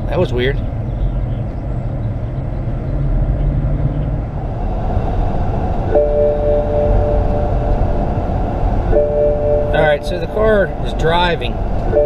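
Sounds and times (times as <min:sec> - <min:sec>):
car engine rumbling: 0:00.0 - 0:12.0
two-note tone: 0:05.9 - 0:10.9.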